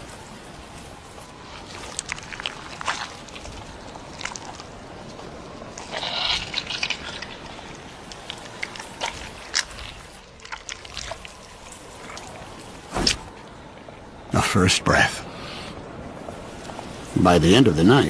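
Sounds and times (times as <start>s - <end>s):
wet liquid sounds: 1.3s - 13.5s.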